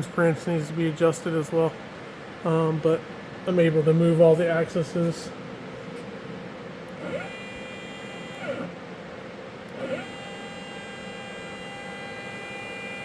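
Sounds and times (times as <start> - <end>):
lathe motor whine: 7.0 - 8.8, 9.7 - 13.0.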